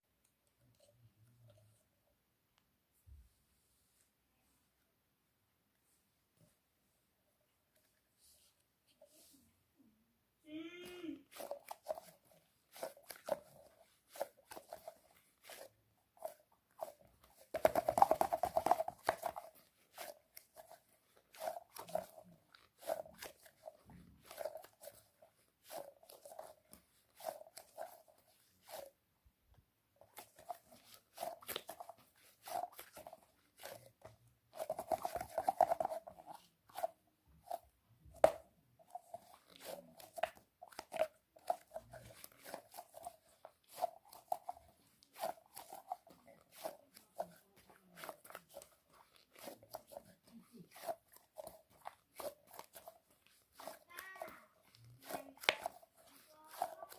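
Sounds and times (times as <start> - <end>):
squishy toys squeezed by hand: 10.4 - 29.0, 30.0 - 56.9.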